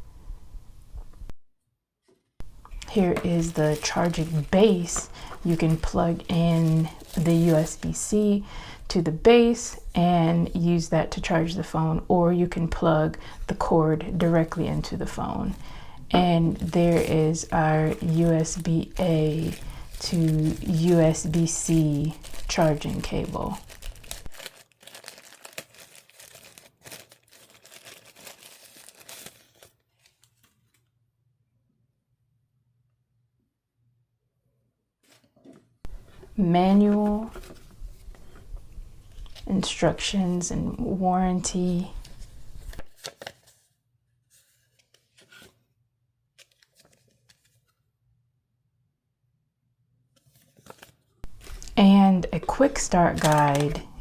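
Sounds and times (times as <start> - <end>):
packaging crinkling and rustling: 2.7 - 8.1, 14.3 - 30.9, 42.0 - 43.7, 46.4 - 47.8, 50.2 - 54.0.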